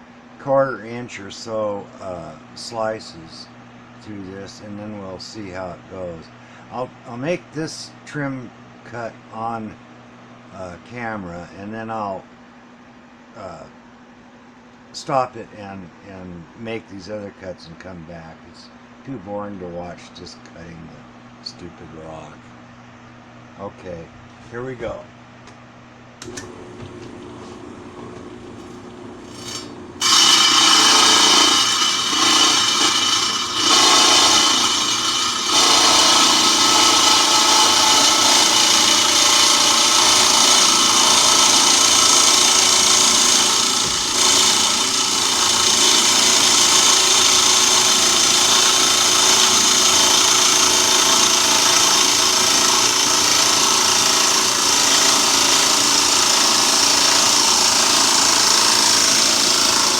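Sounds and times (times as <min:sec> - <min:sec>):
saw blade grinding stone: 0:29.3 - 0:59.9.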